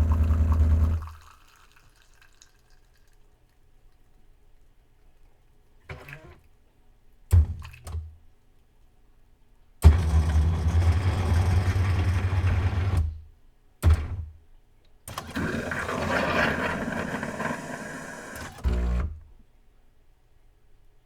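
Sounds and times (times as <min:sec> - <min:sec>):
coffee machine motor humming: 0:00.0 - 0:01.1, 0:15.1 - 0:19.2.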